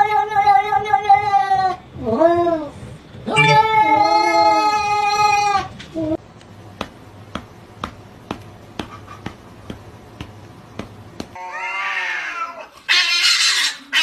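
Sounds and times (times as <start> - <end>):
cat meowing: 3.3 - 4.8.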